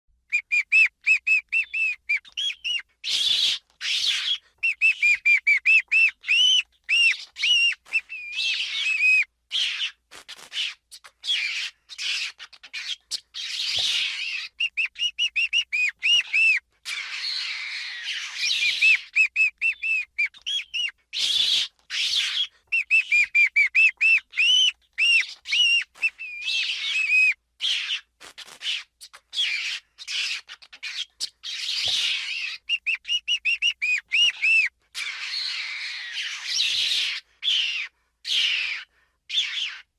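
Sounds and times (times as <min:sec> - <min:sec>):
ferret squeaking: 0:10.6 - 0:28.1.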